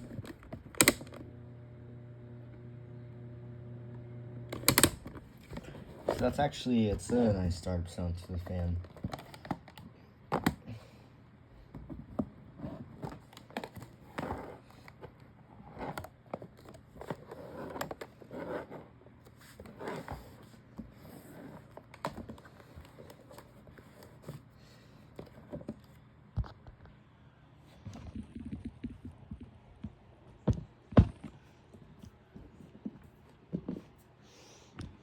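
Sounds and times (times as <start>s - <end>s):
faint low hum: 0.0s - 35.0s
handling knocks and rustles: 4.8s - 10.7s.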